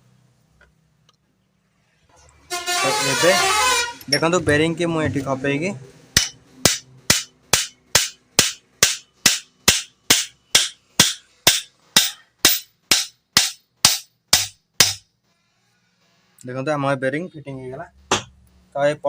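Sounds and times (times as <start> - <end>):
hammer striking metal: 6.2 - 15.1, 18.1 - 18.4.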